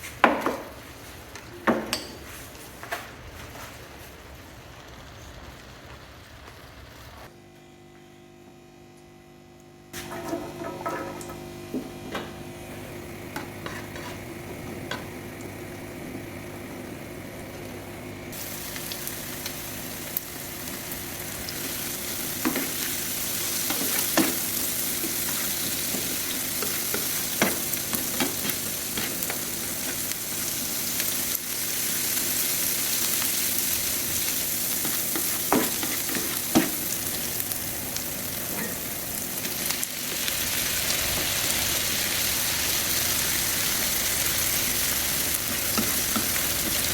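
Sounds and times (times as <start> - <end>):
food sizzling in oil: 10.0 - 46.9
spatula scraping a pan: 13.3 - 15.0.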